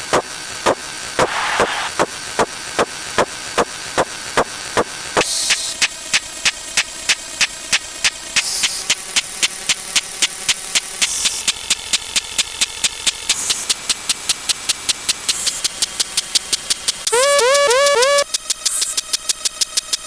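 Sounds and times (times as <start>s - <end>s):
train of sharp clicks: 0.0s - 17.1s
short bursts of hiss: 0.7s - 2.2s.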